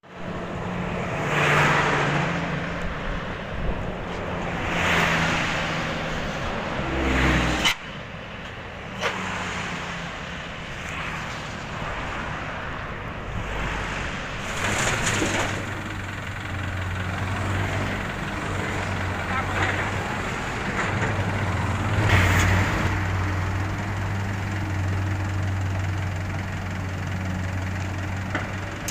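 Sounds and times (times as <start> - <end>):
diesel machinery engine running: 12.8 - 28.9.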